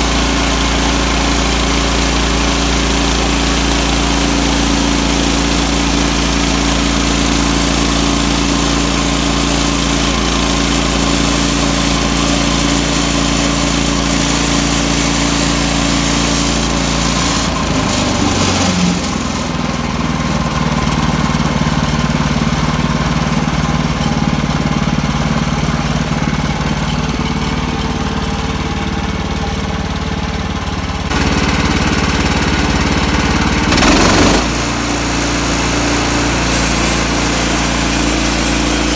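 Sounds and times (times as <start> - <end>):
small gasoline engine running: 0.0 - 38.9.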